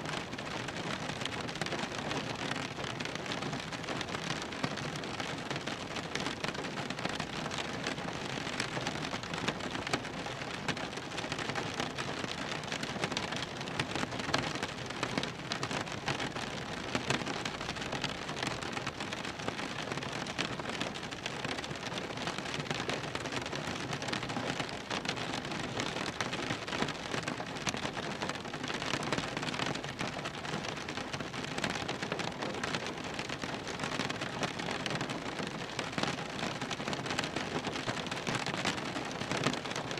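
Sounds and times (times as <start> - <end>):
rain drumming on car roof: 0.0 - 39.9.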